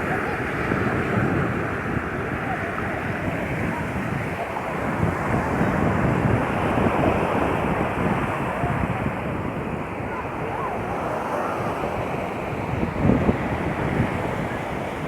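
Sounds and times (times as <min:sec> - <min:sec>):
surf washing onto beach: 0:00.0 - 0:15.0
wind buffeting microphone: 0:00.0 - 0:15.0.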